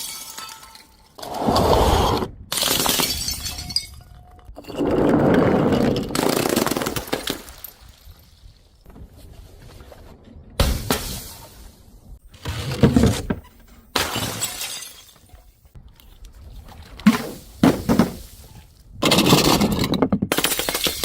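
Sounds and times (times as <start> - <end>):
glass bottles shattering: 0.0 - 1.2, 2.6 - 4.9, 13.9 - 15.5, 19.0 - 21.0.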